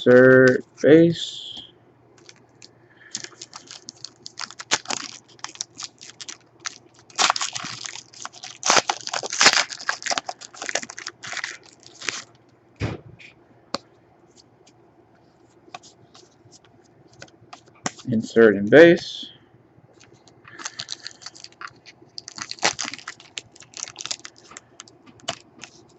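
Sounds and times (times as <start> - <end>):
foil wrapper crinkling: 2.2 - 12.4, 20.0 - 25.9.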